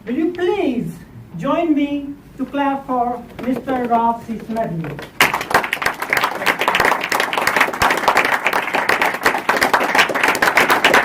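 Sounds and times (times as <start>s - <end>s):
audience clapping in unison: 4.9s - 11.0s.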